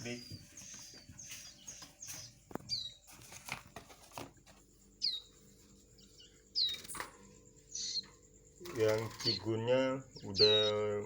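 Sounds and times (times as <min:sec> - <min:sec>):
rustling and light knocks: 0:00.0 - 0:06.2
nestlings chirping: 0:00.0 - 0:11.0.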